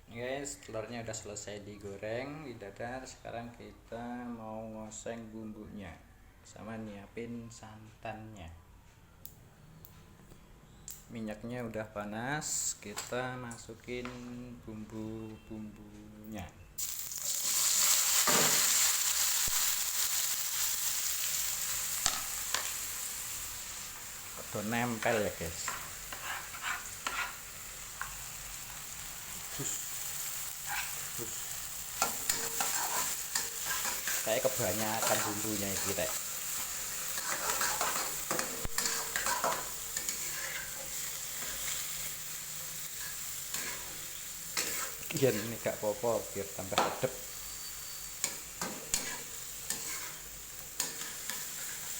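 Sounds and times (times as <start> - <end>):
seasoning sizzling in hot oil: 16.8 - 51.9
spatula scraping a pan: 25.0 - 28.2, 30.6 - 31.1, 32.0 - 36.2, 37.0 - 41.9, 42.9 - 45.7, 47.2 - 51.9.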